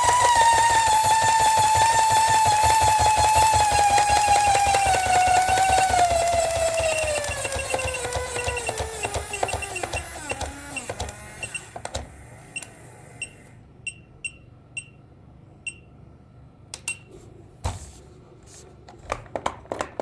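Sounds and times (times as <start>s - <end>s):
toy alarm clock motor whining: 0.0s - 13.5s.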